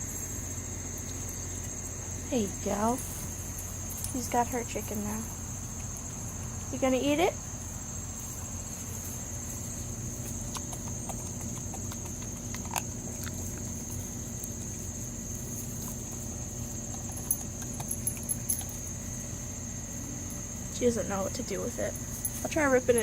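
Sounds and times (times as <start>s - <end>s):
crickets chirping: 0.0s - 23.0s.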